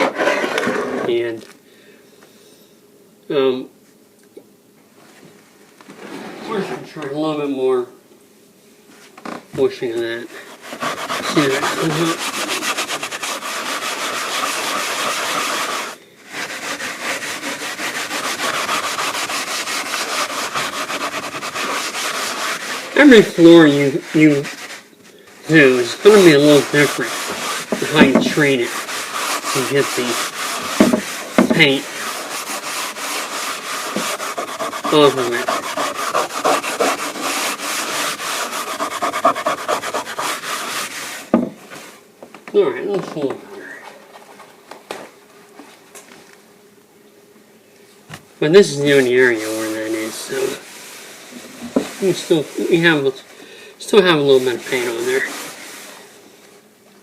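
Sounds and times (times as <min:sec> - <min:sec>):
abrasive rubbing on wooden floor: 0:00.0 - 0:01.2, 0:05.9 - 0:07.0, 0:09.0 - 0:42.0, 0:48.6 - 0:53.2, 0:54.2 - 0:56.0
thump: 0:30.8 - 0:31.6, 0:41.3 - 0:41.6.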